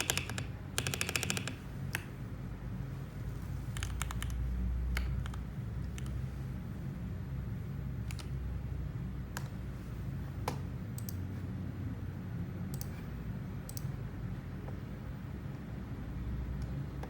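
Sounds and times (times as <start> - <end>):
mechanical keyboard keystroke clicks: 0.0 - 2.1, 3.8 - 6.2, 8.1 - 8.3
steady low hum: 0.0 - 17.0.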